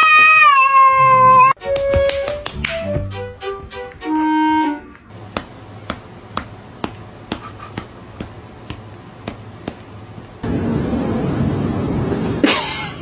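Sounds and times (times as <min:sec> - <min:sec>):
music with woodwind notes: 0:01.6 - 0:05.1.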